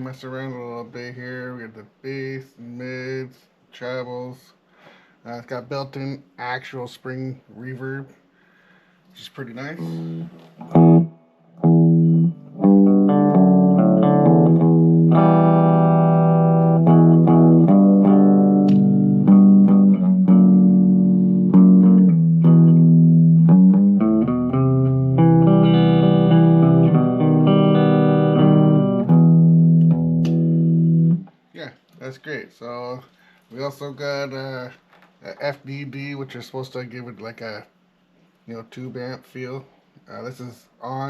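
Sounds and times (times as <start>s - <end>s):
clean electric guitar: 9.6s - 31.9s.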